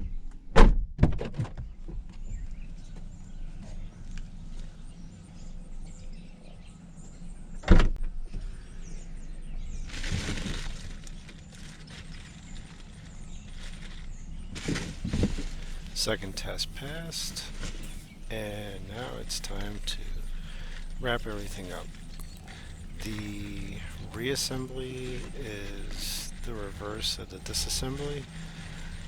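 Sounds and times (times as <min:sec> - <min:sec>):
low hum: 0:15.0 - 0:29.0.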